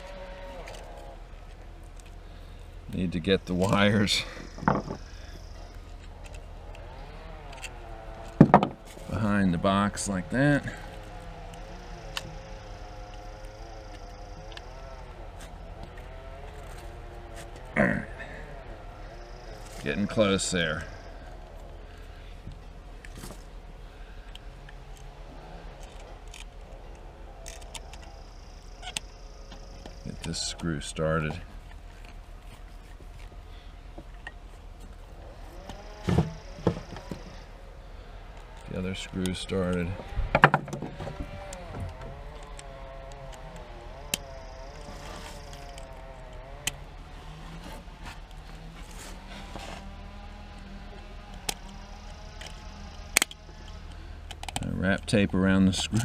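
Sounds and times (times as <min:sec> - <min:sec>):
distant engine running: 0:00.0 - 0:56.0
outlet and wires clicking: 0:19.4 - 0:37.6, 0:38.2 - 0:56.0
sharp clicks: 0:51.3 - 0:55.1.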